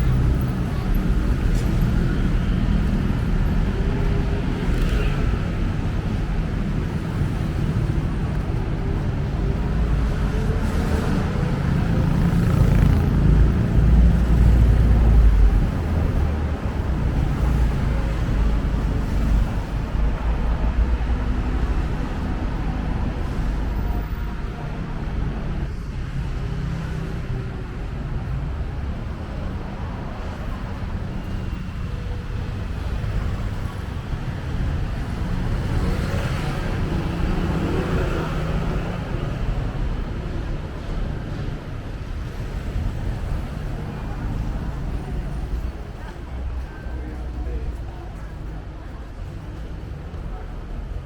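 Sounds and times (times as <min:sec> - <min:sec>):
rumble of passing cars: 0:00.0 - 0:51.0.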